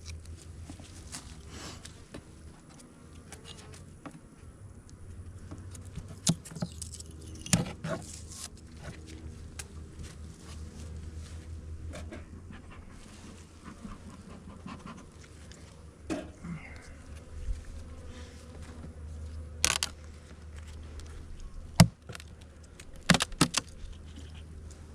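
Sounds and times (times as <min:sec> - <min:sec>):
honey bees buzzing: 0:13.4 - 0:23.2.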